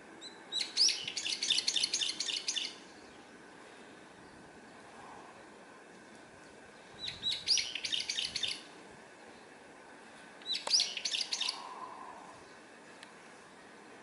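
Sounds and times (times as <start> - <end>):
songbird chirping: 0.2 - 3.5, 6.4 - 9.6, 10.4 - 14.0.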